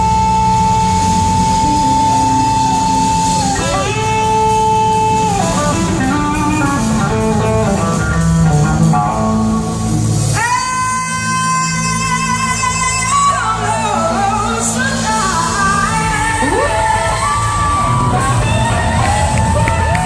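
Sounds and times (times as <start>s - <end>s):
blues-rock band playing: 0.0s - 20.0s
electric guitar: 0.0s - 20.0s.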